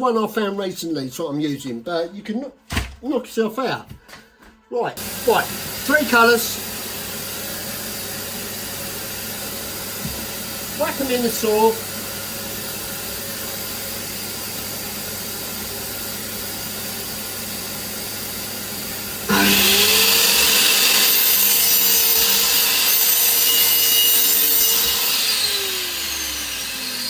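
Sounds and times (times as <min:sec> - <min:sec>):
saw blade cutting vinyl tile: 0:05.0 - 0:27.0
mitre saw motor whine: 0:10.5 - 0:27.0.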